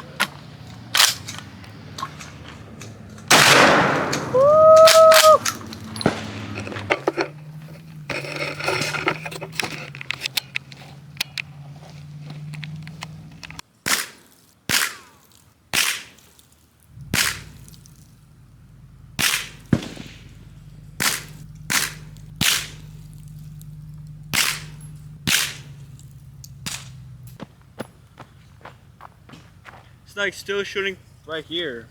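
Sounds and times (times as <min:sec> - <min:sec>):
gunshots: 0:03.3 - 0:06.9, 0:13.8 - 0:16.2, 0:17.1 - 0:17.8, 0:19.2 - 0:22.9, 0:24.3 - 0:25.8.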